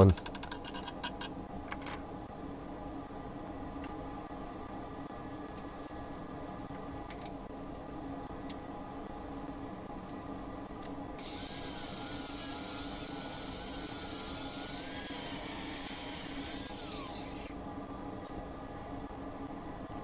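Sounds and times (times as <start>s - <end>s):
welding arc crackling: 11.2s - 17.5s.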